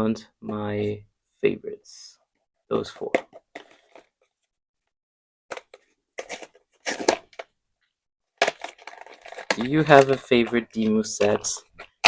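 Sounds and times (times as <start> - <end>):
packaging rustling: 5.5 - 7.5, 8.4 - 12.0.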